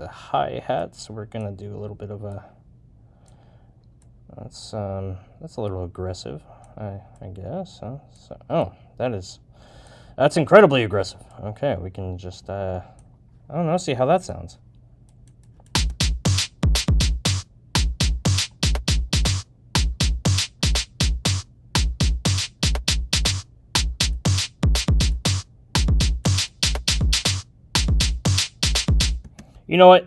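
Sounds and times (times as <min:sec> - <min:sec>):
drum machine beat: 0:15.8 - 0:29.4.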